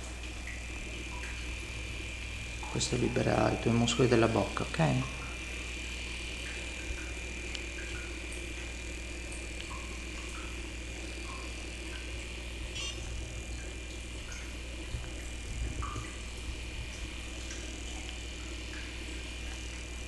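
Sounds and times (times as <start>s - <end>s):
thin high whine: 0.0s - 18.1s
steady low hum: 0.0s - 20.0s
faint small clicks: 7.0s - 8.1s, 9.6s - 10.5s.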